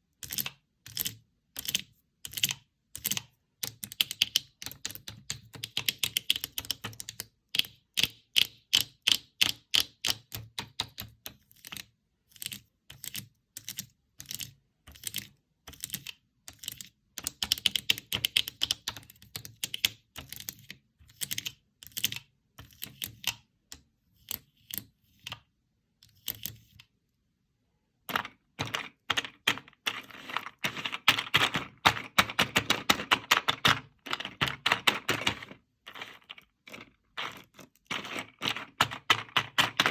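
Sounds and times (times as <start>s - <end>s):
fingers tapping paper board: 28.1s - 39.9s.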